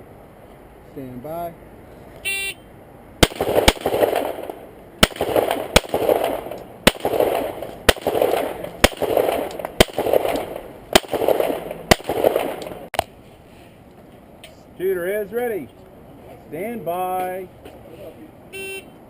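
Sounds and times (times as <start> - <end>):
pistol shots with echo: 3.2 - 12.9.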